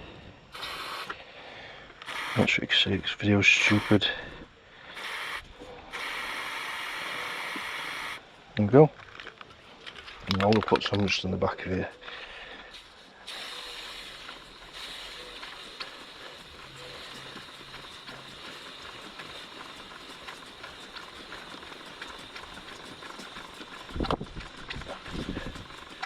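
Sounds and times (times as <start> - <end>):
aerosol spray hissing: 0.5 - 1.2, 2.0 - 4.3, 4.9 - 8.2, 12.7 - 24.1.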